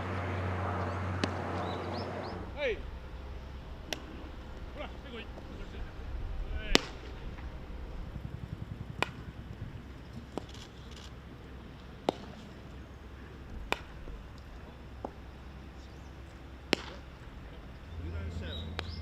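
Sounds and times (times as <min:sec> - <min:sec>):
baseball bat cracks: 0:01.2 - 0:07.9, 0:09.0 - 0:09.4, 0:12.0 - 0:17.7.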